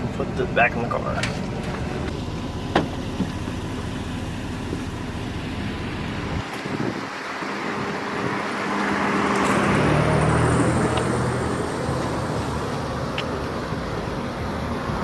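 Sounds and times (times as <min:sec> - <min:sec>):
road traffic noise: 0:00.0 - 0:15.0
vehicle passing: 0:07.4 - 0:15.0.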